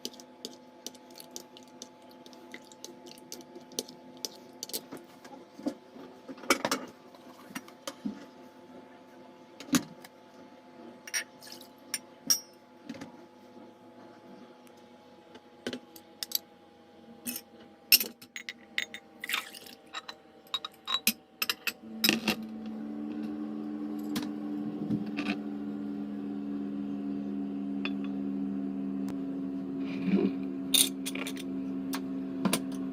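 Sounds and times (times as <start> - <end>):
steady low hum: 16.3 - 32.9.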